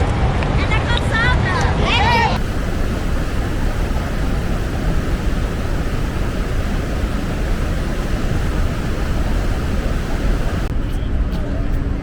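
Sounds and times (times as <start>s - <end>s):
wind buffeting microphone: 2.4s - 10.7s
vehicle rumble and hiss: 2.4s - 12.0s.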